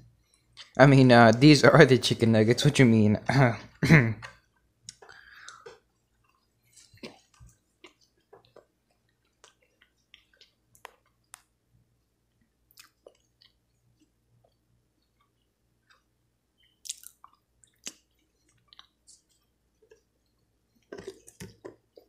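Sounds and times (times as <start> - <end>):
faint chewing: 4.2 - 11.5, 12.3 - 22.0.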